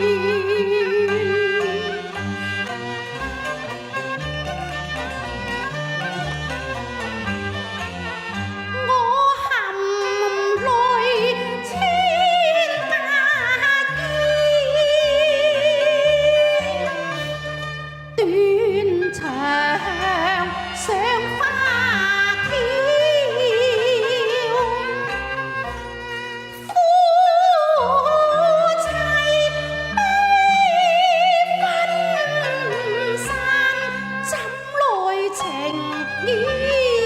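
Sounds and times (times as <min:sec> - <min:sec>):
opera singing with heavy vibrato: 0:00.0 - 0:02.2, 0:08.8 - 0:17.2, 0:18.2 - 0:25.5, 0:26.8 - 0:37.0
sustained accompaniment: 0:00.0 - 0:37.0.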